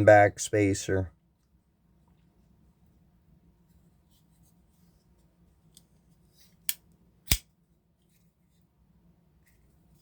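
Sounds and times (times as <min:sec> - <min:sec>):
folding knife blade clicks: 0:06.7 - 0:07.4.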